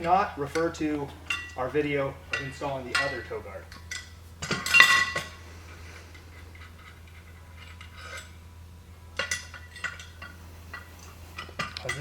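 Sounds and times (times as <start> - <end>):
metal parts clanking: 0.0 - 5.4, 9.2 - 12.0.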